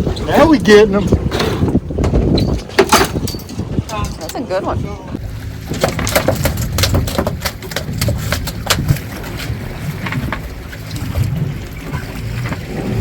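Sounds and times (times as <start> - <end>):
wind buffeting microphone: 0.0 - 13.0
sharp knocks and clatter: 2.0 - 4.3, 5.6 - 9.1.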